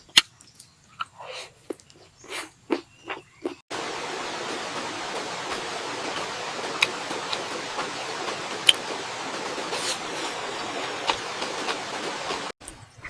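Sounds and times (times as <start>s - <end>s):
river water rushing: 3.7s - 12.6s.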